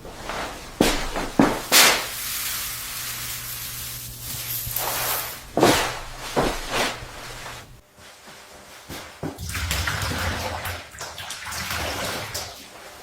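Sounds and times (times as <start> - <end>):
steady hiss: 0.1 - 7.8.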